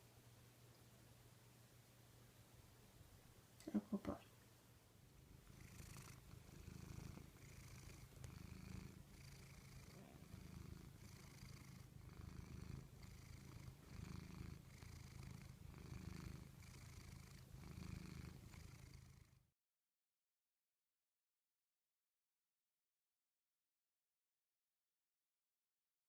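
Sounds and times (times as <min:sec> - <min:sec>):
cat purring: 0:05.1 - 0:19.5.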